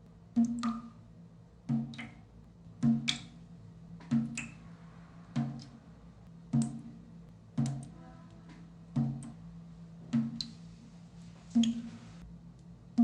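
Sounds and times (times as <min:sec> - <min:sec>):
water dripping plinks: 0:00.3 - 0:01.0, 0:01.7 - 0:03.4, 0:04.0 - 0:04.7, 0:06.5 - 0:06.9, 0:07.6 - 0:07.9, 0:09.0 - 0:09.4, 0:10.1 - 0:10.6, 0:11.5 - 0:11.9.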